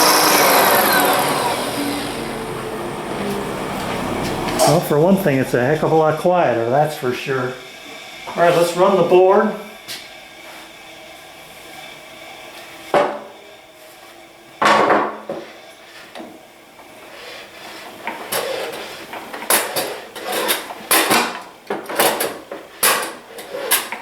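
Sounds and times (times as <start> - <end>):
planer running: 0.0 - 14.0.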